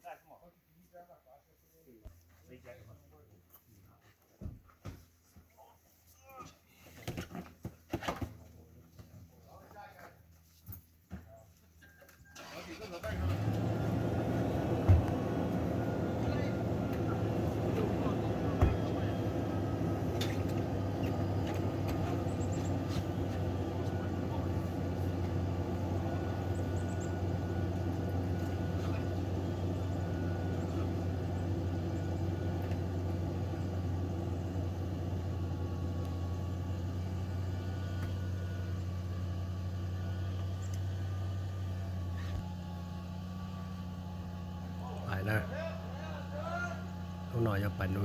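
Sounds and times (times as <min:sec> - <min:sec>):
low mechanical rumble: 0:12.4 - 0:48.0.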